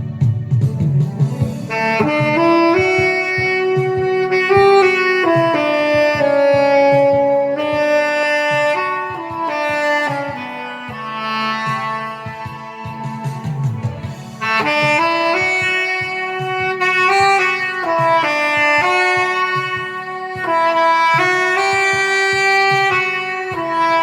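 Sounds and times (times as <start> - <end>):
accompaniment with steady beat: 0.0 - 24.0
saxophone melody: 0.0 - 24.0.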